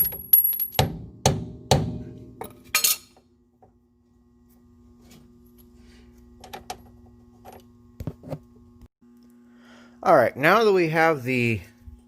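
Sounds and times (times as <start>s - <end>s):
metal tools clanking on steel: 2.4s - 3.2s.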